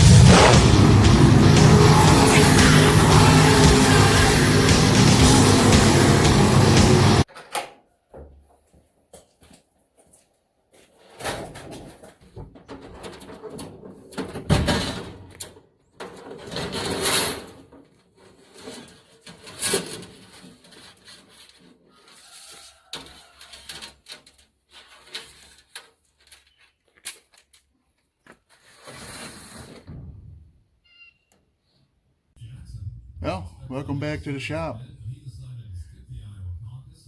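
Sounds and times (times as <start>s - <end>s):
scraping bursts: 0.0s - 7.2s.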